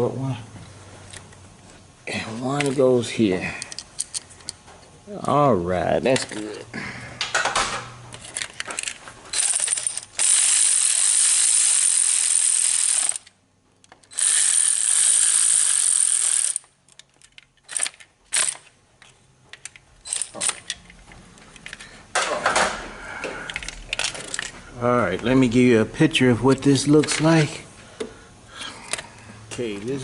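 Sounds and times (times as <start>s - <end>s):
ratchet wrench running: 9.3s - 13.3s, 14.0s - 16.7s.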